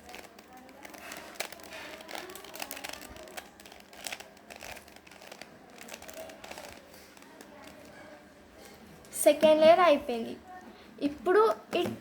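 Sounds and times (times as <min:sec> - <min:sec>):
plastic cube clicking and rattling: 0:00.0 - 0:07.9.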